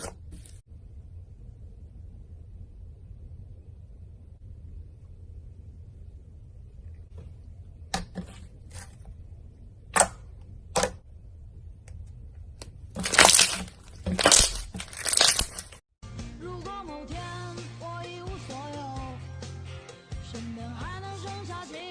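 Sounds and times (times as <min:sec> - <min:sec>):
slime crackling and popping: 0:13.0 - 0:15.8
background music: 0:16.0 - 0:21.9.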